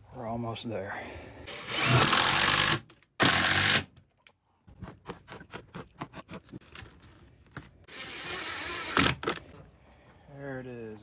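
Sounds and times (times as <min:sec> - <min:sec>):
power drill driving screws: 0:01.5 - 0:03.9, 0:07.9 - 0:09.4.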